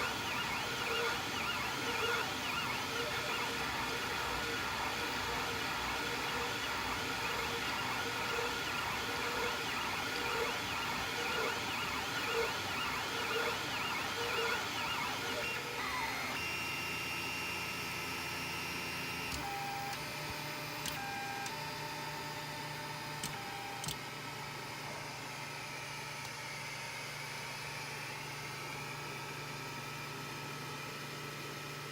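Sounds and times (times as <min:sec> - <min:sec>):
stepper motors whining: 0:00.0 - 0:16.5.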